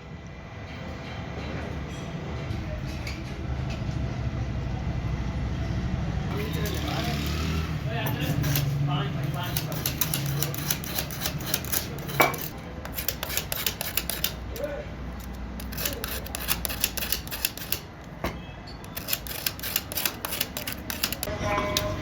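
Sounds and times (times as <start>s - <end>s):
metal parts clicking and scraping: 6.3s - 22.0s.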